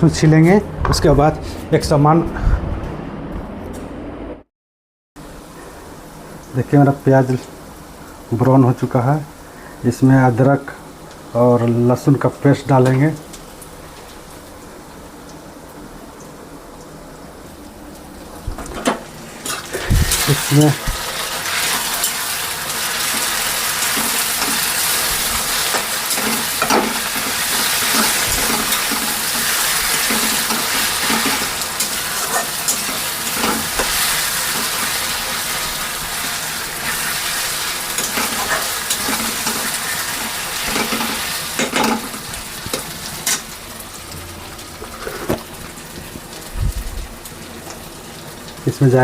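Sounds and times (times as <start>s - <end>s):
food sizzling in hot oil: 12.1s - 49.0s
spoon scraping and knocking pan: 25.6s - 34.8s.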